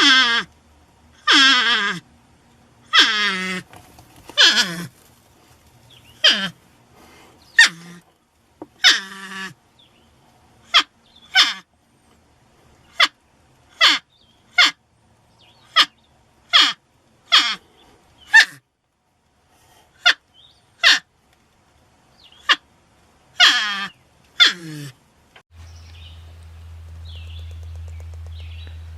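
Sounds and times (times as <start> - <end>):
porcupine squeaky cries: 0.0 - 0.5, 1.2 - 2.0, 2.9 - 3.7, 4.4 - 4.9, 6.2 - 6.6, 7.6 - 8.0, 8.8 - 9.6, 10.7 - 11.7, 12.9 - 14.8, 15.7 - 17.6, 18.3 - 18.6, 20.8 - 21.1, 23.4 - 24.9.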